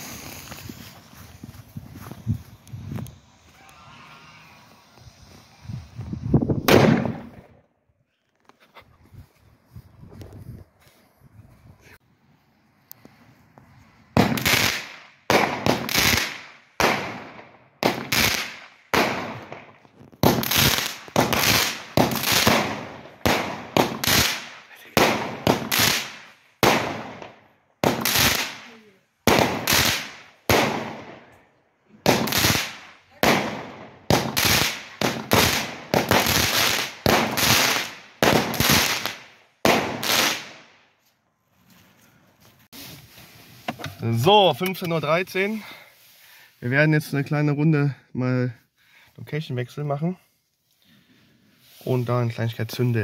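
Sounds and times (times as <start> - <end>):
fireworks bangs with echo: 6.6 - 7.5, 14.2 - 31.3, 32.0 - 40.6.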